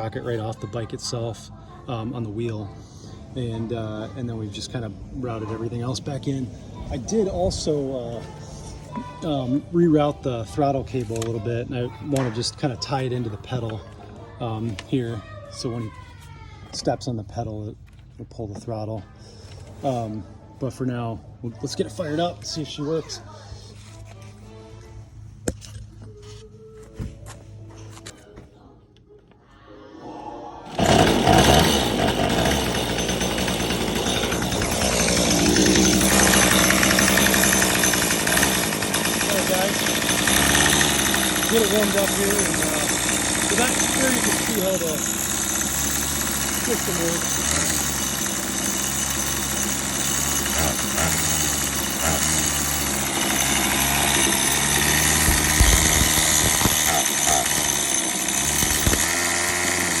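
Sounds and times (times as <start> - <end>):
weed whacker engine running: 30.7 - 60.0.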